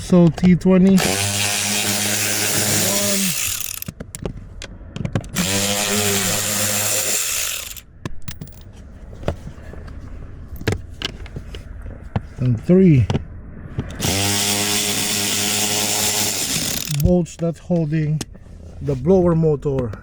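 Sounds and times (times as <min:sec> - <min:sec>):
cordless drill whining: 0:01.0 - 0:03.9, 0:05.4 - 0:07.8, 0:13.9 - 0:17.2.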